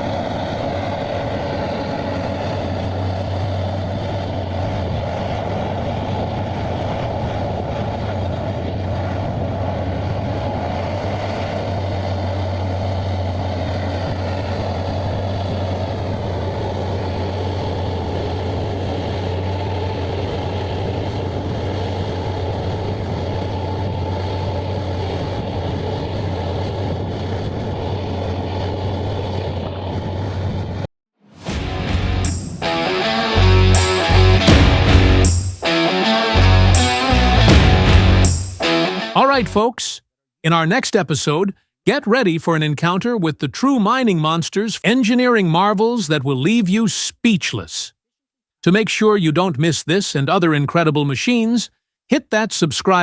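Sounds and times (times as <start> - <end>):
heavy machine engine hum: 0.0 - 30.9, 31.5 - 39.6.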